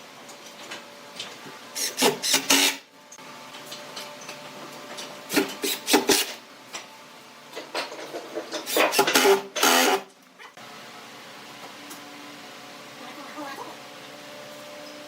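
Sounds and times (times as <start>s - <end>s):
hand tool scraping wood: 5.3s - 6.4s, 8.6s - 10.1s.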